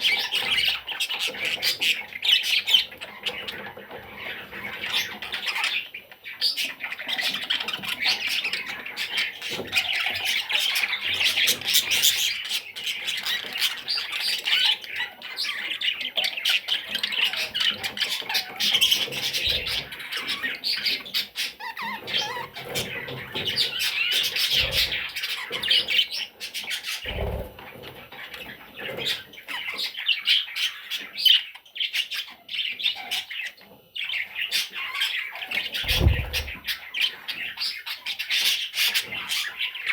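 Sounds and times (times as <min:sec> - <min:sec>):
bird chicks chattering: 0:00.0 - 0:39.9
dull thumps: 0:35.9 - 0:36.8.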